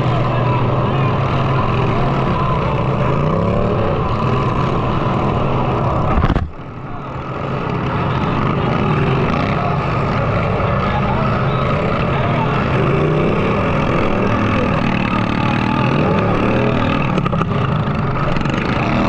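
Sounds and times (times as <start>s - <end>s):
lawnmower engines revving: 0.0s - 19.0s.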